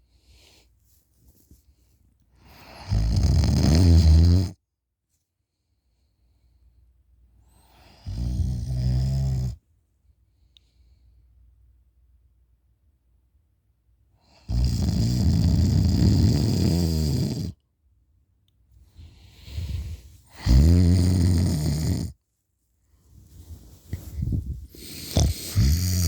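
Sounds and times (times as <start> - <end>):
soft breath: 0.0 - 2.9, 18.8 - 20.7, 22.9 - 26.0
person snoring loudly: 2.8 - 4.5, 14.5 - 17.6, 20.3 - 22.2, 24.7 - 26.0.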